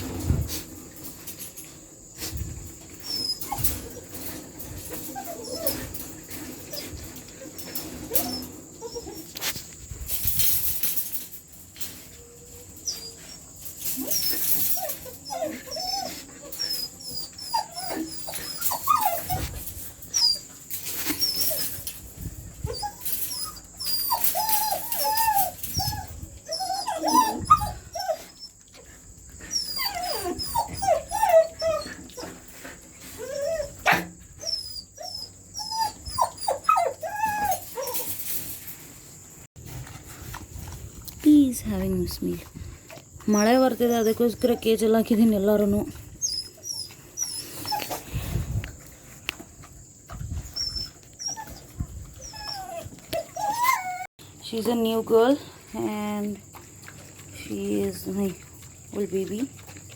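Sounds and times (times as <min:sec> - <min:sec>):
dogs whining and yelping: 0:01.1 - 0:38.5, 0:45.5 - 0:49.0, 0:49.6 - 0:54.2.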